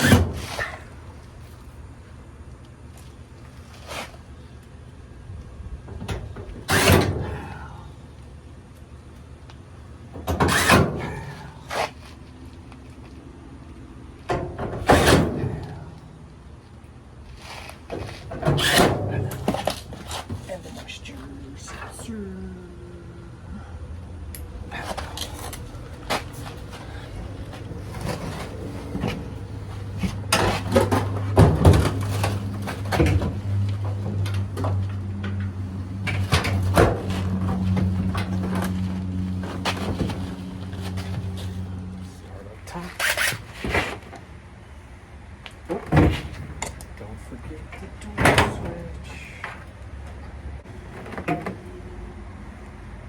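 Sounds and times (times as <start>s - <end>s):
dryer parts sliding and scraping: 0.0s - 1.8s, 2.9s - 4.6s, 5.8s - 7.9s, 9.9s - 13.2s, 14.2s - 22.1s, 24.4s - 44.4s, 45.6s - 51.8s
steady low hum: 0.0s - 53.0s
metal panels clicking and knocking: 25.3s - 38.9s.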